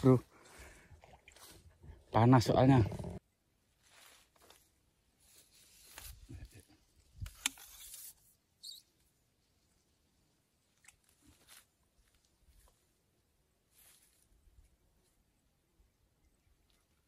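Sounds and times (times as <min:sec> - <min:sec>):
handling rustles and scrapes: 0:03.7 - 0:08.4, 0:10.9 - 0:13.0, 0:13.7 - 0:14.4.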